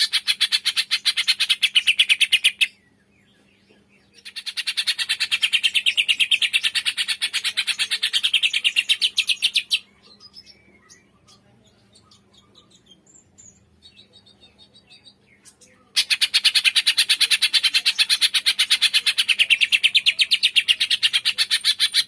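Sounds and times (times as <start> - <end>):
faint low hum: 0.0 - 22.0
songbird trilling: 4.2 - 22.0.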